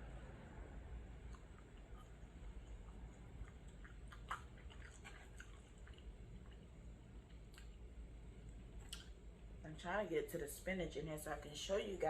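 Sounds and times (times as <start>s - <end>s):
close chewing of food: 1.0s - 9.2s.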